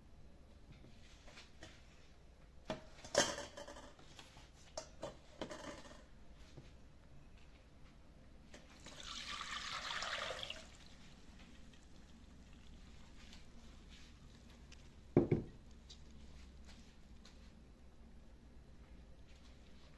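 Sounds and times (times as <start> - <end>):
water flowing: 8.8 - 13.9.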